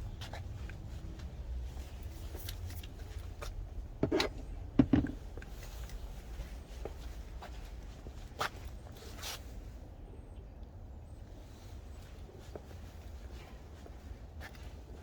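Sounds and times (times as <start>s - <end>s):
steady low rumble: 0.0s - 8.8s.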